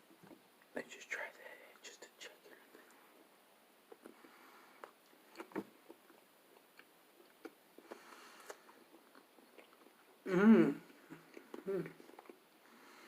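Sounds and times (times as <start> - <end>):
person chewing: 3.9 - 10.2, 10.8 - 12.5.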